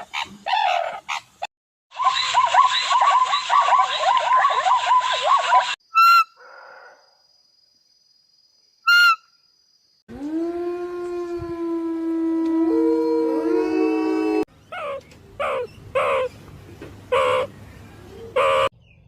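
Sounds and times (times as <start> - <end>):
wolves howling: 10.1 - 16.2
rapid chirping animal calls: 14.6 - 16.4, 17.1 - 17.5, 18.1 - 18.7.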